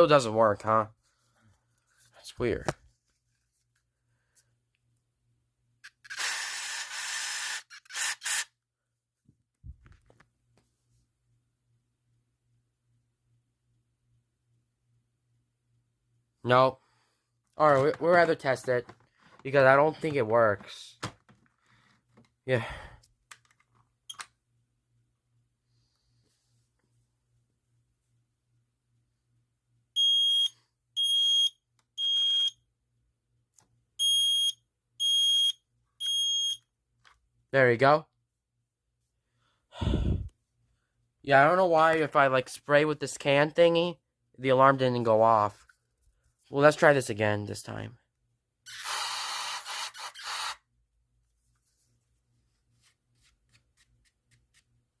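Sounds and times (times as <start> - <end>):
smoke alarm beeps: 30.0 - 32.6, 34.0 - 36.7.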